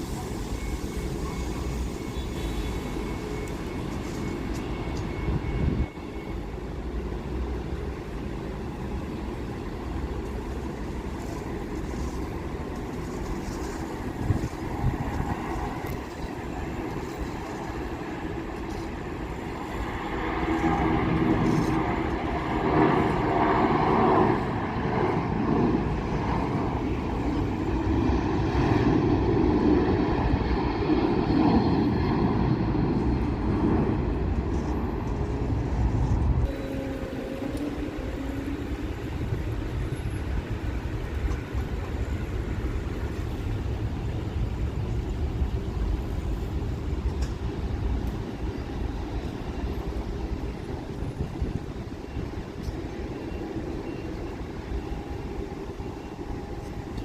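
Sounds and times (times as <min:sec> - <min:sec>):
jet airliner engine rumble: 0:00.0 - 0:57.0.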